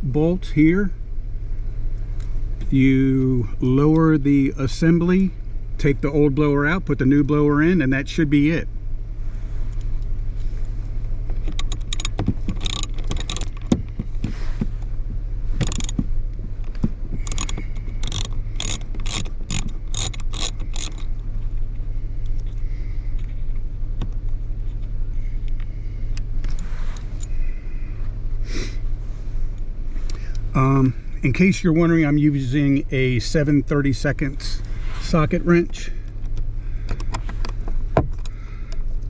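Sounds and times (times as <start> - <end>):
steady low hum: 0.0 - 39.0
ratchet socket wrench clicking: 11.4 - 13.6, 15.6 - 16.0, 17.2 - 21.2.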